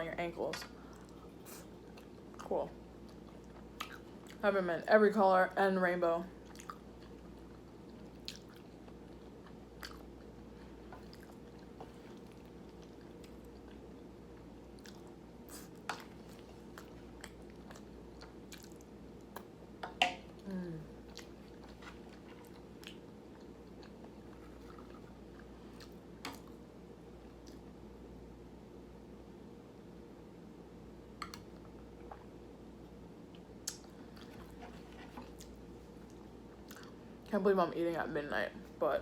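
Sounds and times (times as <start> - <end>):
low room hum: 0.0 - 39.0
person chewing: 3.0 - 4.4, 6.4 - 19.5, 20.4 - 26.6.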